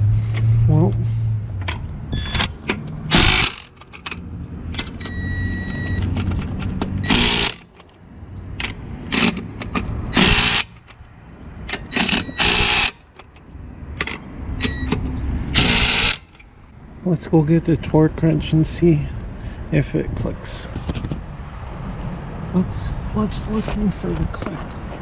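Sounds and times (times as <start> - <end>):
impact wrench hammering: 3.1 - 4.0, 4.8 - 7.8, 8.6 - 11.0, 11.7 - 13.2, 14.0 - 16.4.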